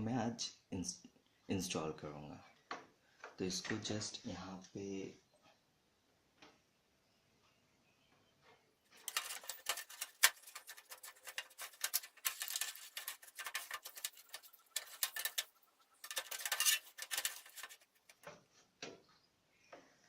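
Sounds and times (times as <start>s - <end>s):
metal scratching and clicking: 8.9s - 18.3s.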